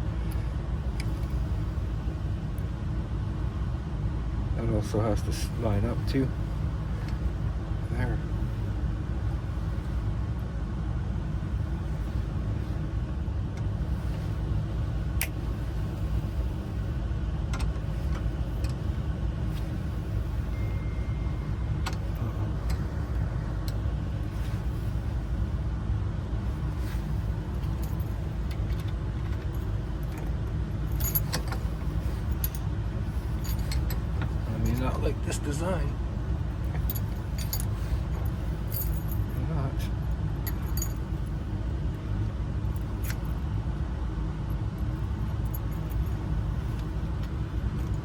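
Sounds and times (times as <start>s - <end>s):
steady low rumble: 0.0s - 48.0s
small metallic clicks and clinks: 30.9s - 35.1s, 36.6s - 41.1s, 42.7s - 43.4s.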